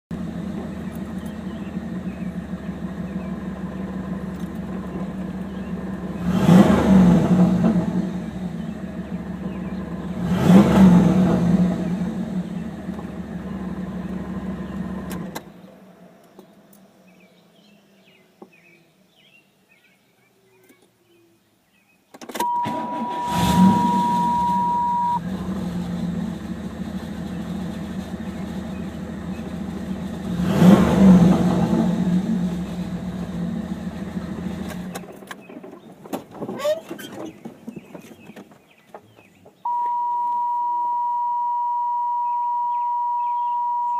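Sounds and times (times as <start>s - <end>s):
car engine idling and revving: 0.0s - 16.9s, 22.4s - 43.9s
steady warning tone: 22.4s - 25.2s, 39.7s - 43.9s.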